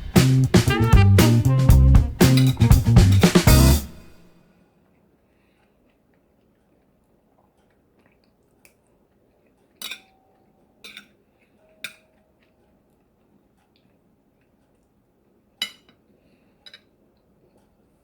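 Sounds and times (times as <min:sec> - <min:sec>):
utensil clinking on tableware: 0:09.8 - 0:11.2.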